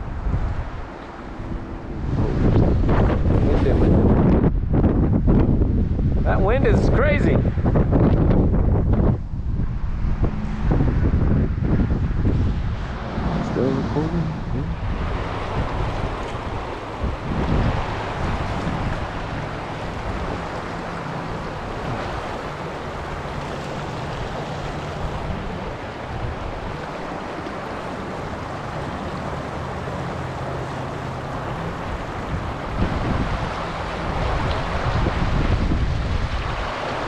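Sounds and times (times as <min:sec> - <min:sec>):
wind buffeting microphone: 0:00.0 - 0:37.0
fast-flowing river rushing: 0:09.7 - 0:37.0.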